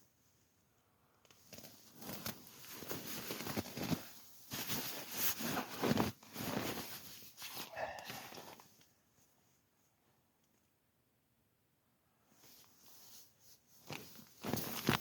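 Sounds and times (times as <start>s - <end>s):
rustling and crinkling handling noise: 1.2s - 9.9s, 12.4s - 15.0s.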